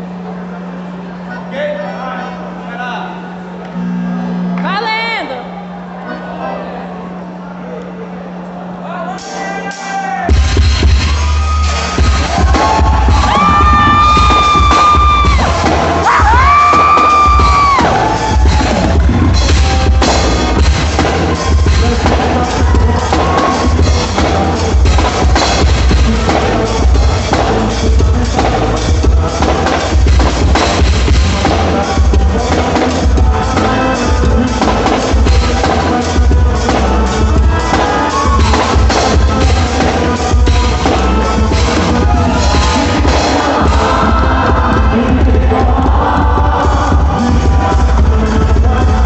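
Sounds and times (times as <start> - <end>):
drum kit beat: 9.2 - 49.0
instrumental dance music: 10.4 - 49.0.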